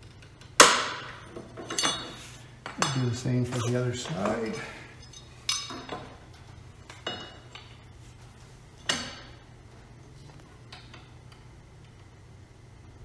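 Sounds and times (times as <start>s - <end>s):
metal plate clinking: 1.0s - 6.0s.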